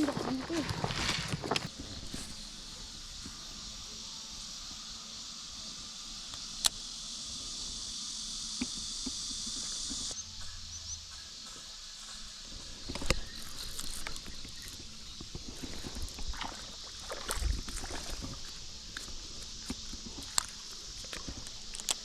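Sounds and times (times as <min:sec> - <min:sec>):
insects droning: 0:00.0 - 0:22.0
water sloshing: 0:15.4 - 0:19.1.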